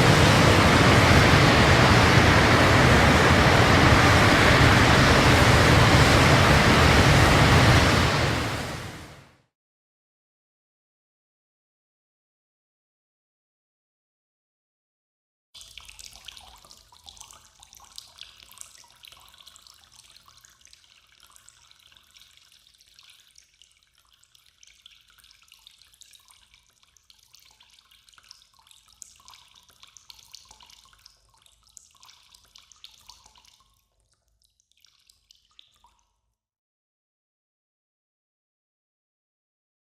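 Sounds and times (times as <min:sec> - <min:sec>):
water dripping and trickling: 0:15.6 - 0:36.4.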